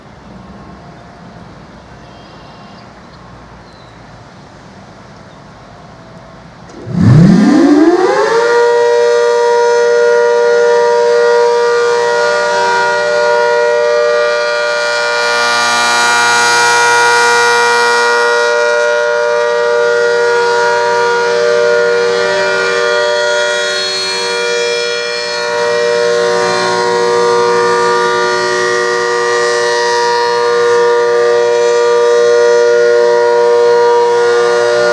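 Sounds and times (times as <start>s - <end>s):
warning siren winding up: 6.7s - 19.2s.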